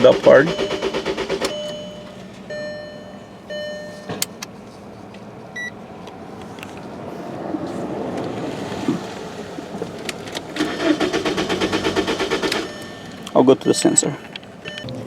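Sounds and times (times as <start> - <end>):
electronic beeps: 0.3 - 4.2, 12.6 - 14.9
short higher beep: 0.3 - 4.3, 12.7 - 14.9.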